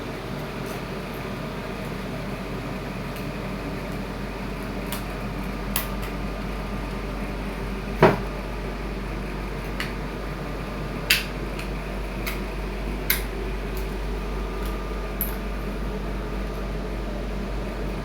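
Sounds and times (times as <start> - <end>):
air conditioner humming: 0.0 - 18.0.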